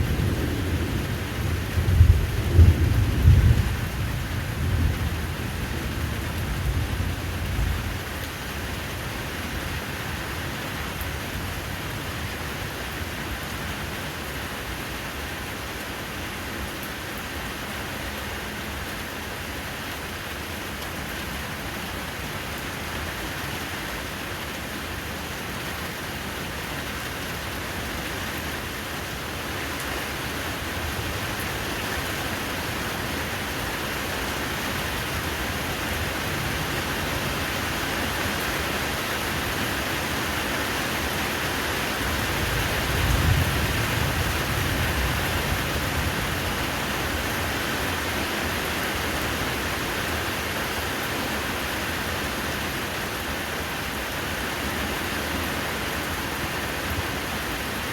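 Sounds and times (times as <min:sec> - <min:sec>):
steady rain falling: 0:00.0 - 0:57.9.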